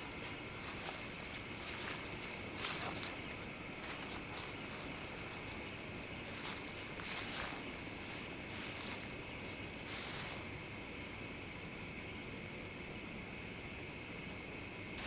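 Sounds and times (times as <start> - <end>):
footsteps crunching dry leaves: 0.0 - 10.5
night insects trilling: 0.0 - 15.0.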